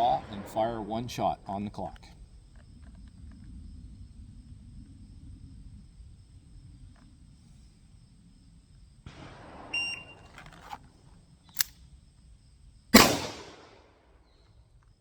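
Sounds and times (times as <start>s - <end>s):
shot timer beep: 9.8s - 10.2s.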